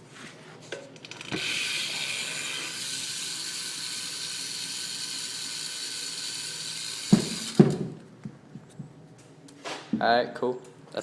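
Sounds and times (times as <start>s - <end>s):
bike hub ratcheting buzz: 1.0s - 8.0s.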